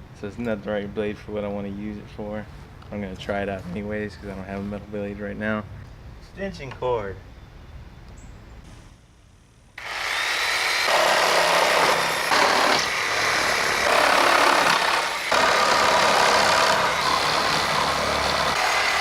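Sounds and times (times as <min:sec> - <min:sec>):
reciprocating saw cutting nails: 0:09.8 - 0:19.0.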